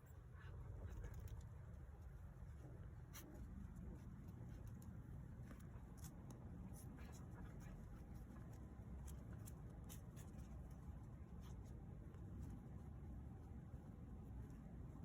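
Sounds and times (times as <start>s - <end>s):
low steady rumble: 0.0s - 15.0s
scratching and rustling: 0.1s - 15.0s.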